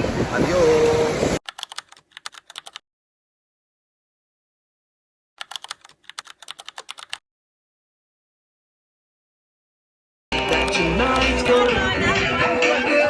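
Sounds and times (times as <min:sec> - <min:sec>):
keyboard typing: 0:01.4 - 0:02.8, 0:05.4 - 0:07.2, 0:10.3 - 0:11.8.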